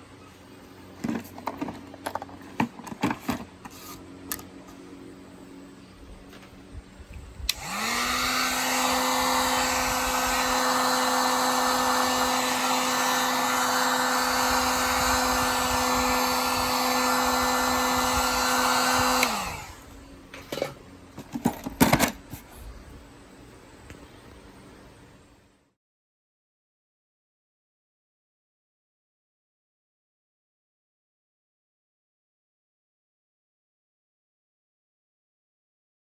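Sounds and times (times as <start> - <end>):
hot-air blower humming: 2.5 - 23.0.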